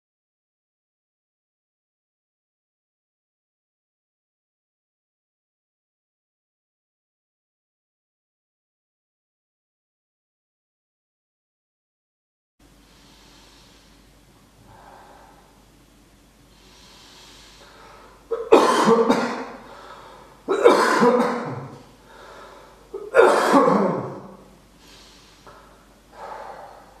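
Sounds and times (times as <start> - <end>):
soft breaths: 12.7 - 18.4, 19.4 - 20.5, 21.8 - 23.1, 24.2 - 27.0
person coughing hard: 18.3 - 19.7, 20.5 - 21.8, 22.9 - 24.4.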